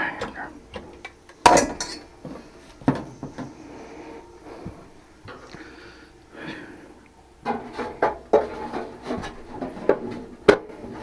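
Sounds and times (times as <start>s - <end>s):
metal tools knocking and clinking: 1.0s - 2.1s.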